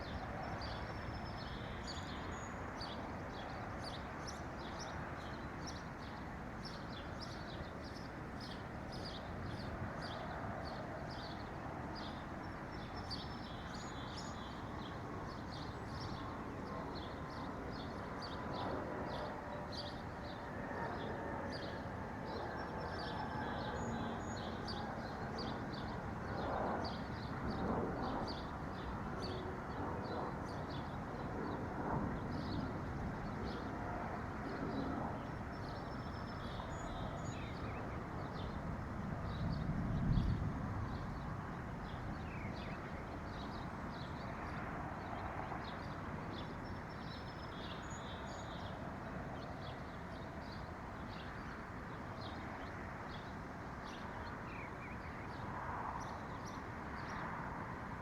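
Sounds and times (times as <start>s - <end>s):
small songbirds chirping: 34.6s - 38.6s.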